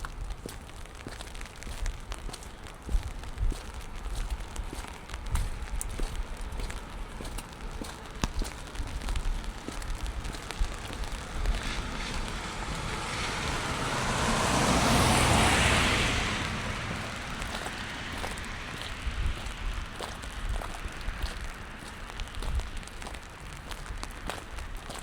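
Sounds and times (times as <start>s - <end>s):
car tyres hissing on wet street: 0.0s - 25.0s
rain pattering: 0.0s - 25.0s
water drips: 0.0s - 25.0s.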